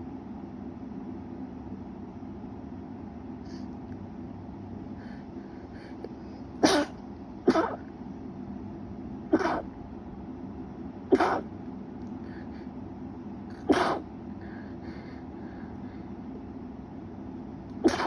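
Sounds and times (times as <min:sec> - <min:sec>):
person stifling sneezes: 0:06.6 - 0:07.8, 0:09.4 - 0:09.7, 0:11.1 - 0:11.5, 0:13.6 - 0:14.0.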